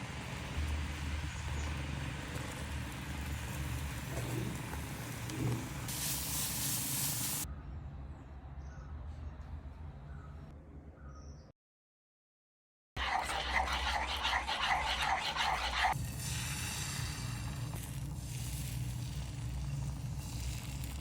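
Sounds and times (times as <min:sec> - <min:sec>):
batter whisked in a bowl: 0:13.0 - 0:21.0.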